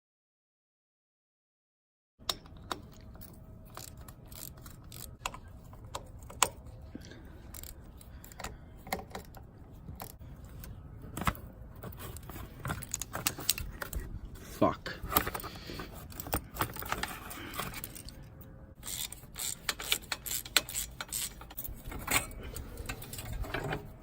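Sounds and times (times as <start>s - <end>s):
metal tools clinking: 15.1s - 24.0s.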